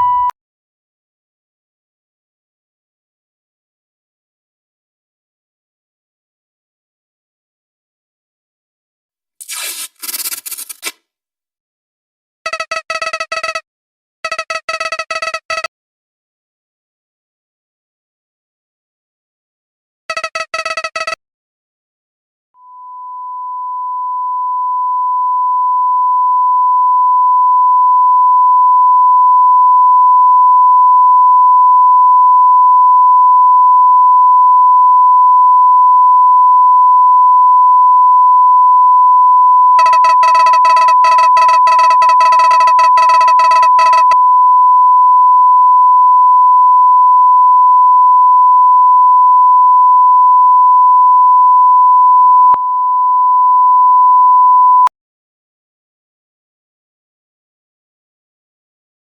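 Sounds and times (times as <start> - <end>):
high electronic beep tone: 0.0 - 0.3, 12.5 - 13.6, 14.2 - 15.7, 20.1 - 21.2, 39.8 - 46.5.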